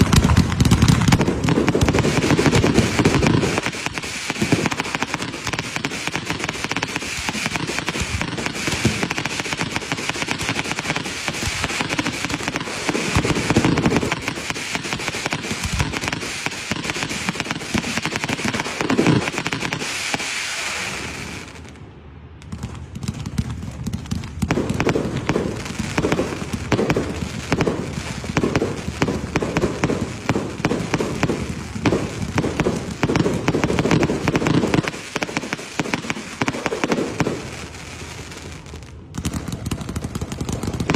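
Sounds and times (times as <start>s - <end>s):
fireworks crackling: 0.0s - 40.9s
deep firework thuds: 22.4s - 37.5s.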